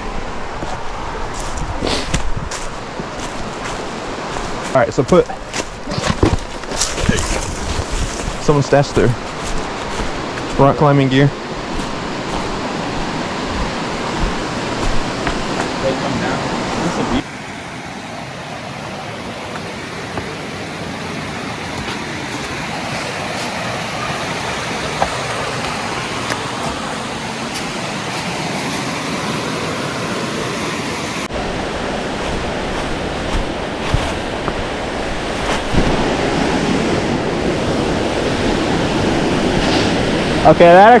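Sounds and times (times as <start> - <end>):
waterfall rushing: 9.6 - 41.0.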